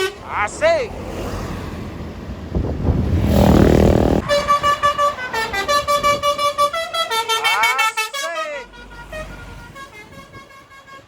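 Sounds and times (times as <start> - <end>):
bus passing: 0.0 - 11.0
multi-tone bus horn melody: 4.2 - 11.0.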